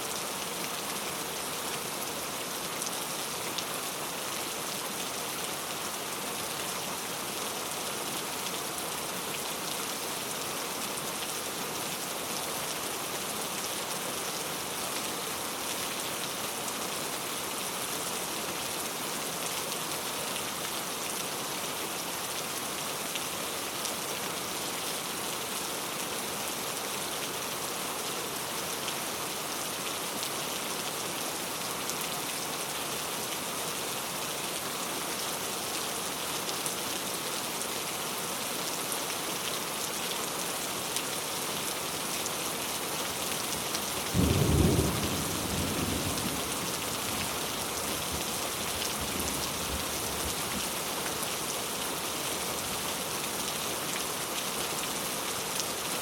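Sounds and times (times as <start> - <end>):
heavy rain hissing: 41.9 - 53.4.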